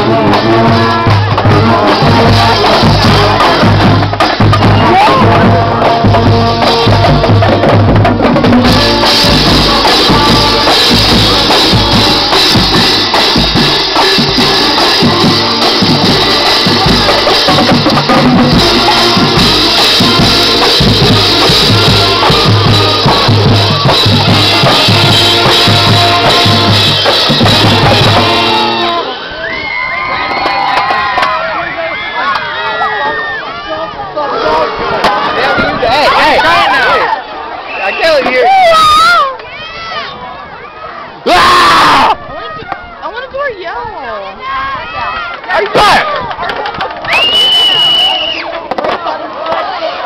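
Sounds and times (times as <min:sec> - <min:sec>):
bass and snare drums: 0:00.0 - 0:29.0, 0:30.1 - 0:31.4, 0:45.6 - 0:49.6
marching band playing: 0:00.0 - 0:29.4, 0:34.2 - 0:37.2.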